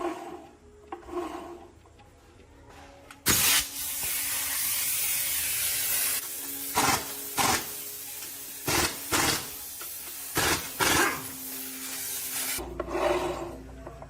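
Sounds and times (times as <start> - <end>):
compressed air hissing: 3.3 - 12.6.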